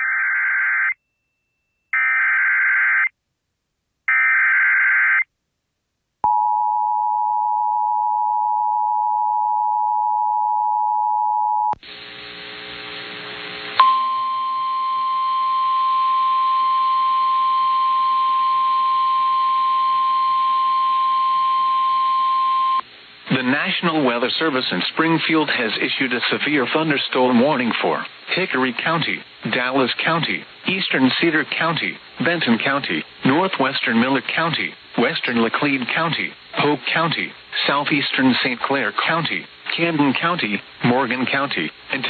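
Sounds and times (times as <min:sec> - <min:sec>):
single-tone warning alarm: 0:13.8 - 0:22.8.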